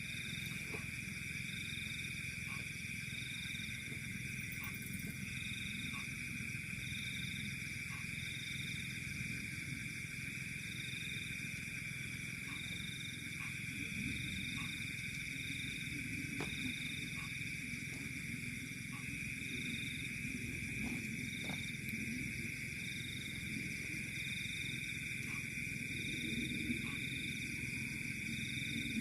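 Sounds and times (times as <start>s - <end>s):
steady high-pitched insect trill: 0.0s - 29.0s
low rumble: 13.7s - 24.5s.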